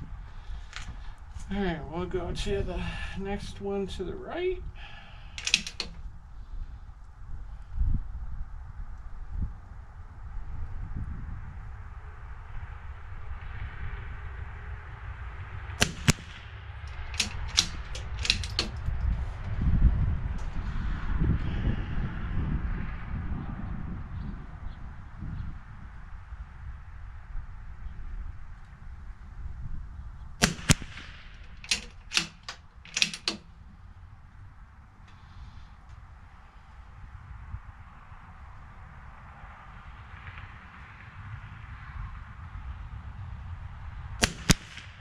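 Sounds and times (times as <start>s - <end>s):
rifle gunshots: 15.8s - 18.7s, 30.4s - 32.4s, 44.2s - 45.0s.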